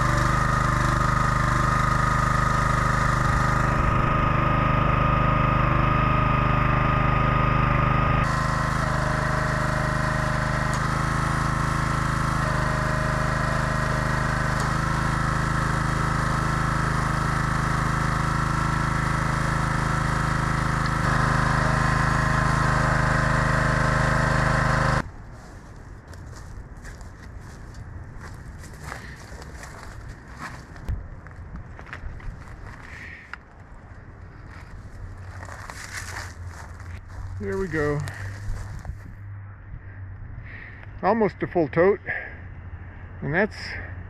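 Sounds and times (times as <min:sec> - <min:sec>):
small engine running: 0:00.0 - 0:25.1, 0:34.4 - 0:39.3, 0:40.4 - 0:44.0.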